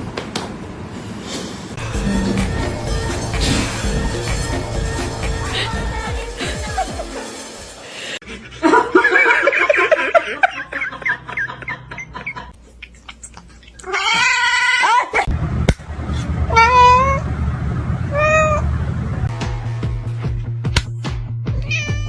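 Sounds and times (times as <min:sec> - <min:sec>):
cat meowing: 0:18.1 - 0:18.6, 0:21.5 - 0:22.0.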